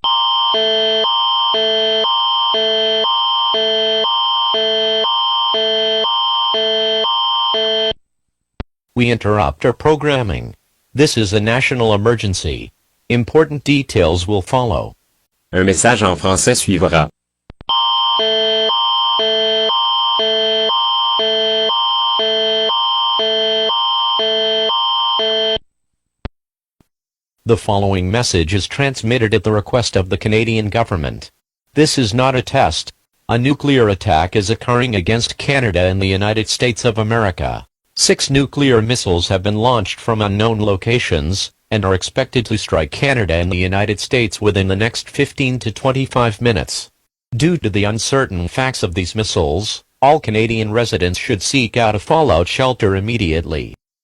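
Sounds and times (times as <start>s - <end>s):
emergency alert tone: 0.0s - 8.0s, 17.7s - 25.6s.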